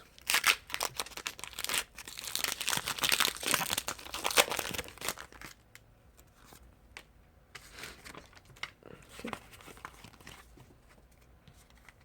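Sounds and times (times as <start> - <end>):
foil wrapper tearing and crinkling: 0.1 - 5.6.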